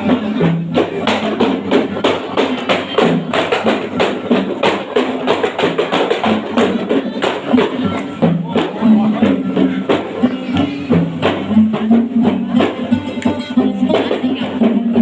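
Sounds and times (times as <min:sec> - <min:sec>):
hand percussion beat: 0:00.0 - 0:15.0.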